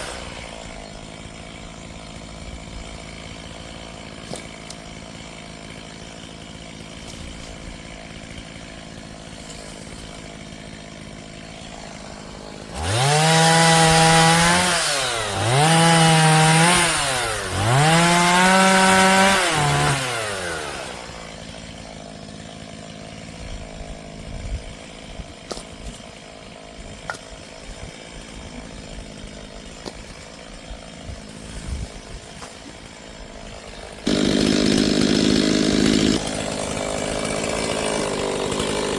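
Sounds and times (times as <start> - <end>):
chainsaw idling and revving: 0.0 - 38.9.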